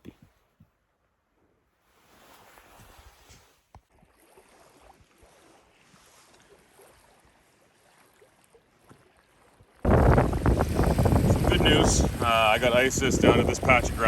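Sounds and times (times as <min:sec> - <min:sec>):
faint outdoor hiss: 0:10.1 - 0:14.0.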